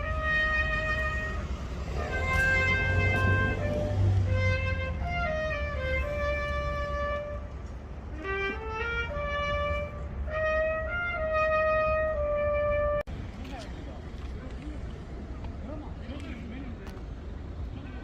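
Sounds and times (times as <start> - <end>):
wind instrument melody: 0.0 - 13.1.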